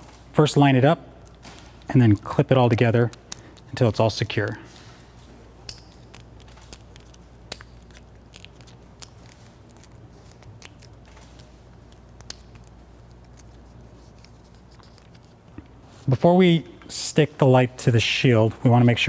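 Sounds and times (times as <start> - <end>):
sharp snaps of pieces locking: 5.6 - 9.3.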